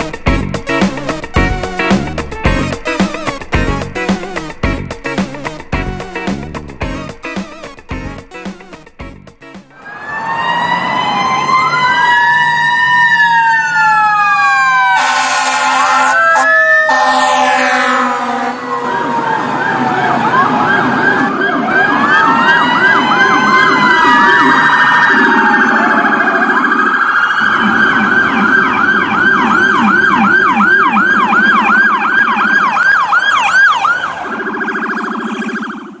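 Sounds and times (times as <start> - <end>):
electronic siren wailing and yelping: 9.8 - 36.0.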